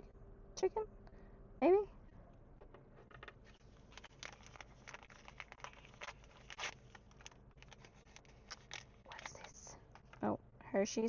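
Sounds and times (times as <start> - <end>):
plastic wrappers crinkling: 3.5 - 10.3.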